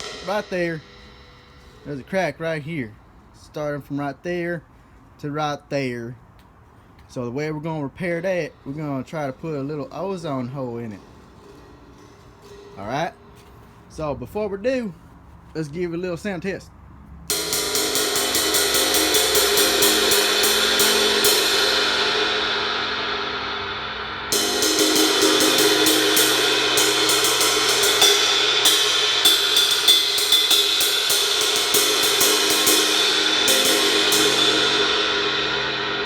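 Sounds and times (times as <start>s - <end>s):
cracked ride cymbal ringing: 0.0s - 3.3s, 7.7s - 14.1s, 17.3s - 36.0s.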